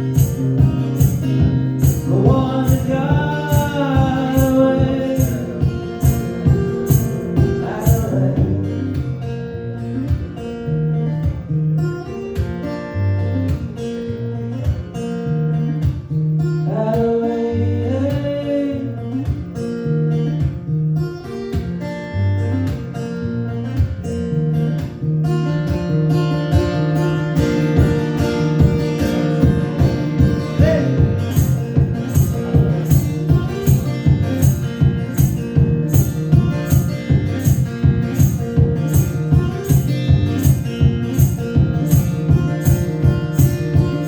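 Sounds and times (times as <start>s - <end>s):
high rhythmic percussion ticks: 0.0s - 8.2s, 27.4s - 44.0s
bass notes: 0.0s - 12.0s, 22.2s - 44.0s
acoustic guitar playing: 0.0s - 44.0s
wordless vocals: 1.7s - 9.2s, 16.6s - 19.2s, 29.0s - 34.4s.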